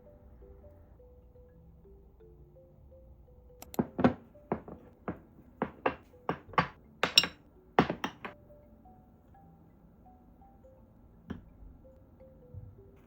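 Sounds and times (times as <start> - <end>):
soft background music: 0.0 - 13.0
kitchenware knocking and clinking: 3.8 - 8.4.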